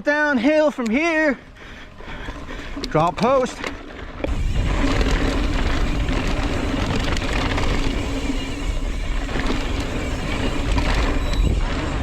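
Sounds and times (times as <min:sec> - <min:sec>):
bike rattling over rough ground: 0:00.4 - 0:12.0
bike tyre noise: 0:00.9 - 0:12.0
wind on microphone: 0:04.2 - 0:12.0.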